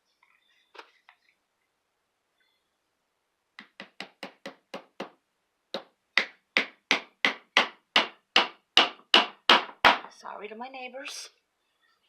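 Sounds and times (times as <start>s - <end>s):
hammer tapping nails: 3.6s - 5.2s, 5.8s - 10.1s.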